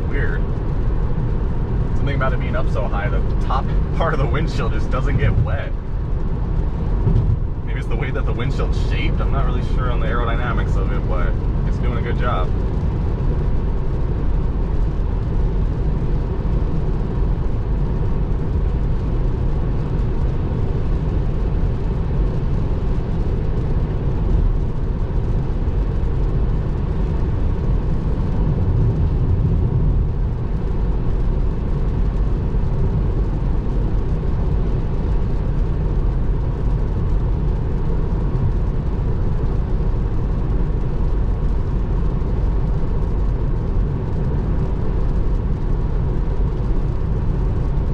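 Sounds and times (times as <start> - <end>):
rain on car: 20.8 - 47.9.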